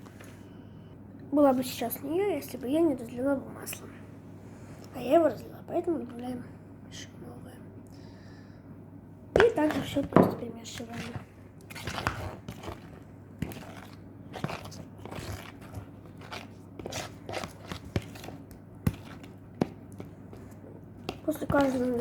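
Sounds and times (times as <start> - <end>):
fork stirring batter in mug: 9.4 - 22.0.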